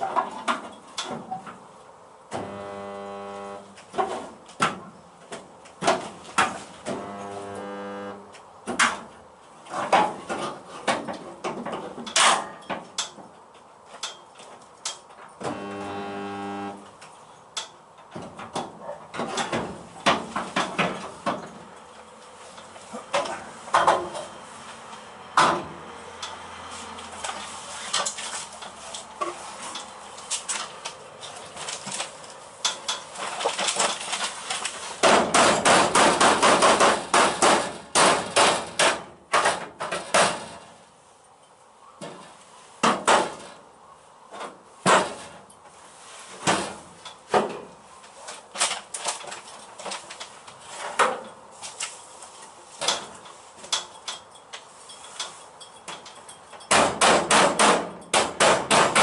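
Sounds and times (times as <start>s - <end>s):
short buzzing hum: 2.4s - 3.8s, 6.9s - 8.3s, 15.4s - 16.9s.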